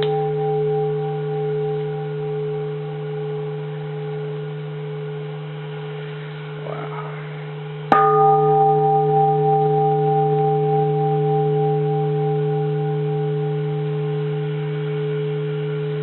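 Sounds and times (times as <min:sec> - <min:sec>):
large bronze temple bell ringing: 0:00.0 - 0:16.0.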